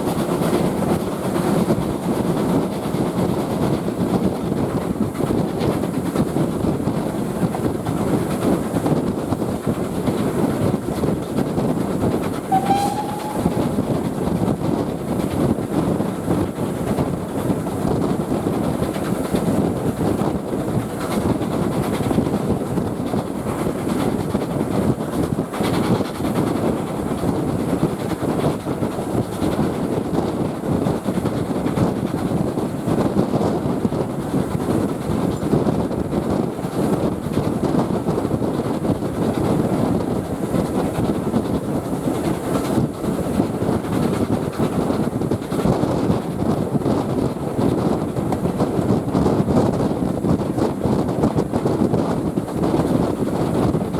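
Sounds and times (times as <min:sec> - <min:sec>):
train rumbling: 0:00.0 - 0:20.0
train whistle: 0:12.4 - 0:14.1.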